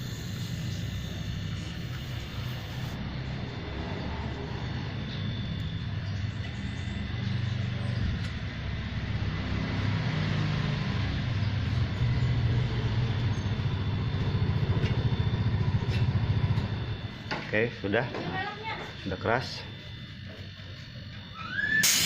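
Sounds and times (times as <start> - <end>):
air hissing: 0.0 - 3.0, 21.4 - 22.0
compressor humming: 0.0 - 22.0.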